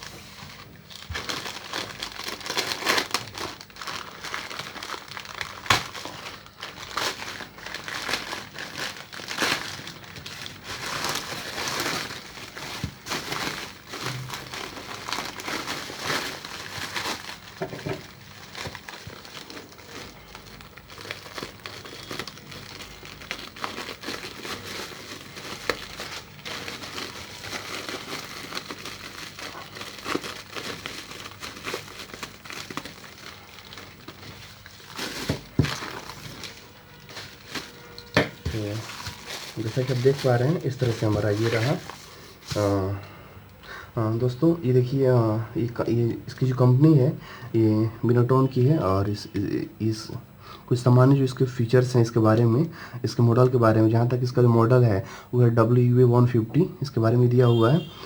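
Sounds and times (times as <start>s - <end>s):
packaging crinkling and rustling: 0.0s - 43.0s.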